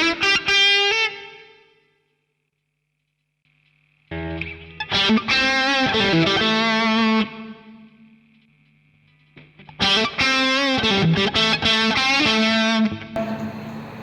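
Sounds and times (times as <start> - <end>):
distorted electric guitar notes: 4.1 - 8.2, 9.4 - 14.0.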